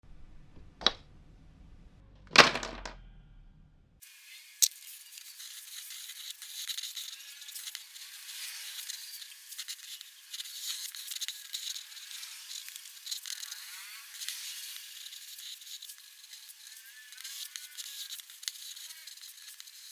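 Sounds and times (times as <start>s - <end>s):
pen nib scratching paper: 4.6s - 19.9s.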